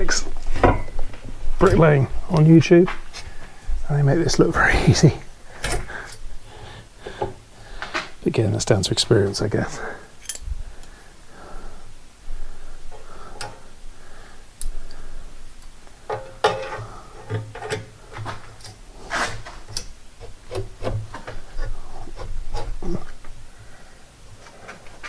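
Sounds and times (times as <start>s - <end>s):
metal props scraping and clicking: 10.2s - 10.5s.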